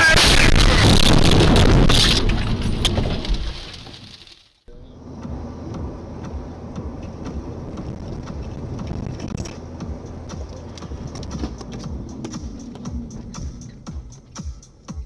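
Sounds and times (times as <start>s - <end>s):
vehicle engine low rumble: 4.7s - 15.0s.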